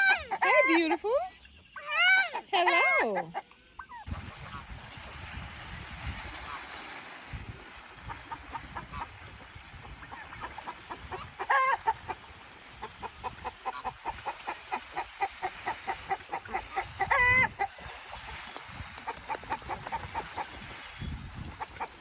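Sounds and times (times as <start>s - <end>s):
bird clucking: 0.0s - 1.2s, 1.8s - 4.6s, 9.8s - 20.7s, 21.4s - 22.0s
drawn-out bird calls: 9.8s - 20.6s.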